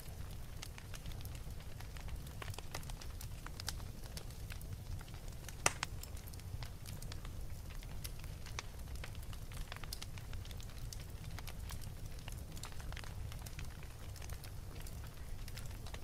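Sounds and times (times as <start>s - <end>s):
wood fire crackling: 0.0s - 16.0s.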